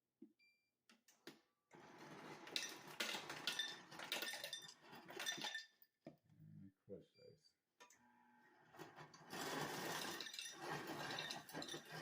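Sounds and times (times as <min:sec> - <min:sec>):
ice dispenser running: 0:01.7 - 0:05.6, 0:08.0 - 0:12.0
ice cubes clinking into glass: 0:02.5 - 0:05.7, 0:09.3 - 0:12.0.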